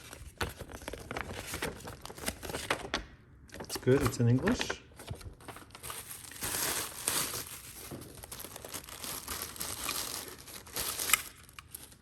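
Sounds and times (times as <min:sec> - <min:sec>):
plastic packaging crinkling: 0:00.0 - 0:03.0, 0:03.6 - 0:12.0.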